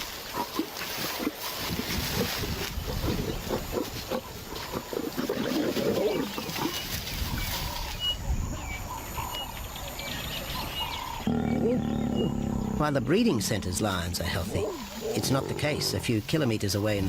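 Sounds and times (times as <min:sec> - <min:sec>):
lion growling and grunting: 0:00.3 - 0:06.8, 0:11.2 - 0:16.3.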